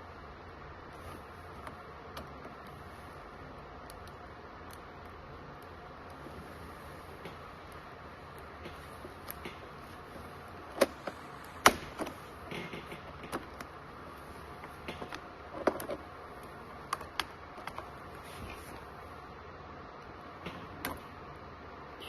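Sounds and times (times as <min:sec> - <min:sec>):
clicks and knocks of tools and plastic: 0:07.1 - 0:18.9.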